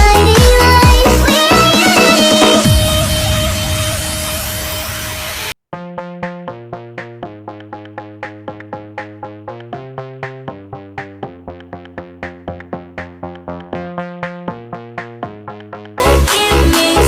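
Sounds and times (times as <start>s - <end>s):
dance beat with heavy kick drum: 0.0s - 5.6s, 16.0s - 17.0s
electronic music with quick notes: 0.0s - 17.0s.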